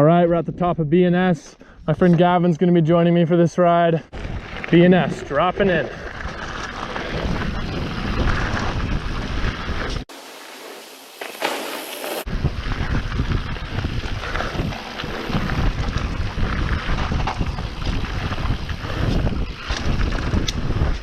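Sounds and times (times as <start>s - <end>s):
bike tyres rumbling and rattling: 4.1s - 10.1s, 11.2s - 21.0s
wind buffeting microphone: 4.1s - 10.1s, 12.2s - 21.0s.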